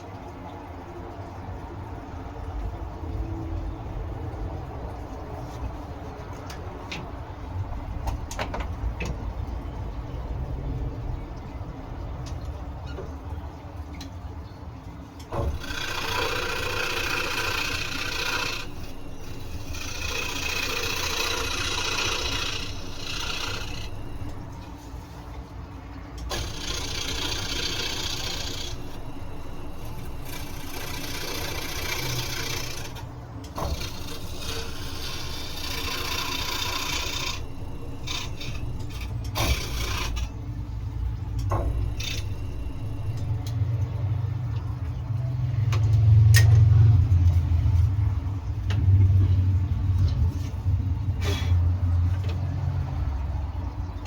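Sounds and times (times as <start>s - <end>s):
scroll saw cutting wood: 15.3s - 24.5s, 26.3s - 40.4s, 41.5s - 43.4s
saw motor hum: 15.3s - 24.9s, 26.3s - 44.9s.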